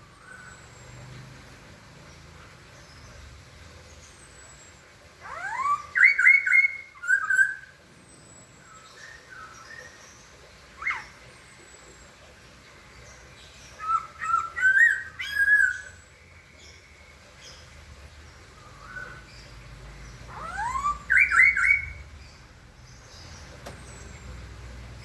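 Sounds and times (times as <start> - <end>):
bird whistling song: 5.2 - 7.8, 10.8 - 11.2, 13.7 - 16.1, 20.3 - 22.4.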